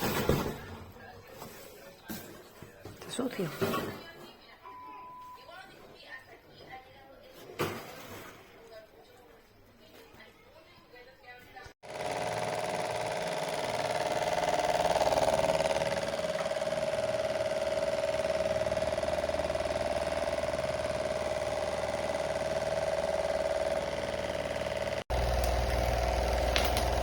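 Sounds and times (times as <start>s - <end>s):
electric fan motor hum: 11.8s - 27.0s.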